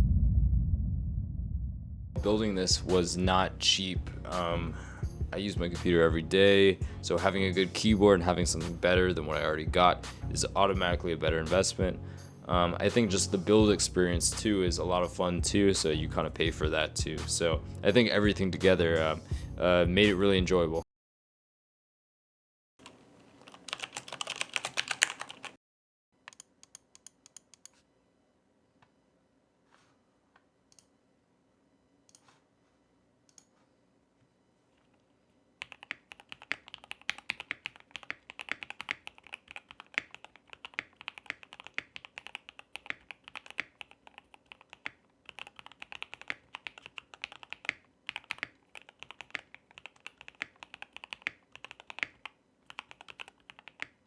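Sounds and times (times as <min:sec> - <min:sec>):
typing on mechanical keyboard: 0:22.8 - 0:25.6, 0:35.6 - 0:54.0.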